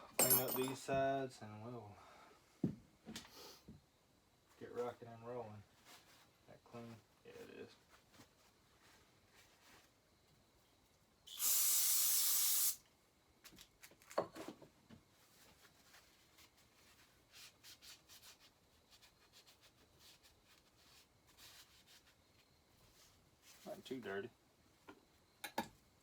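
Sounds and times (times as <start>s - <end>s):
aerosol can spraying: 11.3s - 12.8s.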